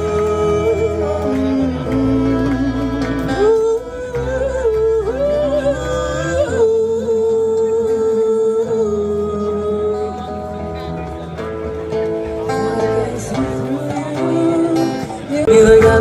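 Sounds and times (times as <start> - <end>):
sustained low chords: 0.0 - 7.9
wordless vocal melody: 0.0 - 16.0.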